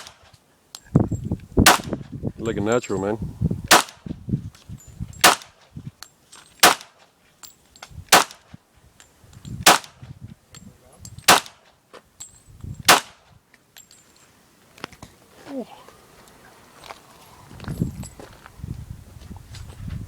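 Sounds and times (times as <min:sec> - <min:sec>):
loud gunshots: 0:01.7 - 0:01.9, 0:03.7 - 0:04.0, 0:08.1 - 0:08.4, 0:09.7 - 0:09.9, 0:11.3 - 0:11.6, 0:12.9 - 0:13.2.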